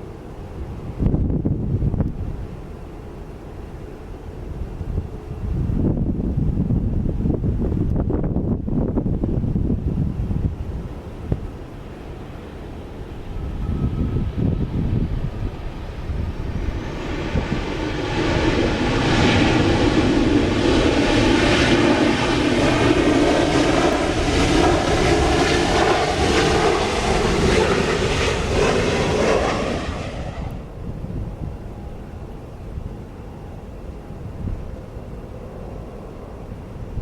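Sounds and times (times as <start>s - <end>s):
wind rumble on microphone: 0.0s - 2.9s, 4.3s - 37.0s
jet engines roaring: 8.6s - 37.0s.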